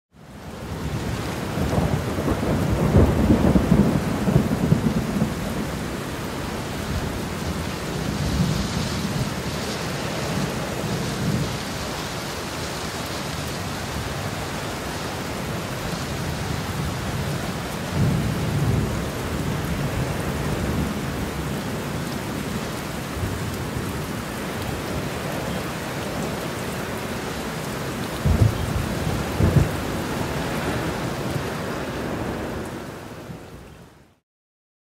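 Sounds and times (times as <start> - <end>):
heavy rain: 0.1 - 34.2
rolling thunder: 0.8 - 11.7, 15.5 - 21.5, 28.1 - 32.6
sharp thunder crack: 28.2 - 29.8.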